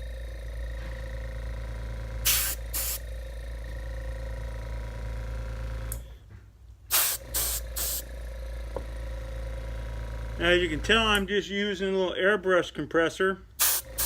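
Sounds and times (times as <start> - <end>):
airbrush compressor humming: 0.0 - 6.1, 6.9 - 11.3, 13.6 - 14.0
airbrush spraying hiss: 2.2 - 3.0, 6.9 - 8.0, 13.6 - 14.0.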